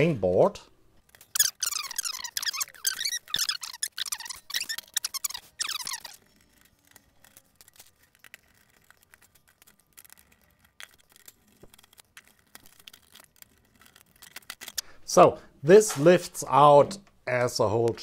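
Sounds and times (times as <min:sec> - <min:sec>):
metal parts clicking and tapping: 0:05.6 - 0:14.8.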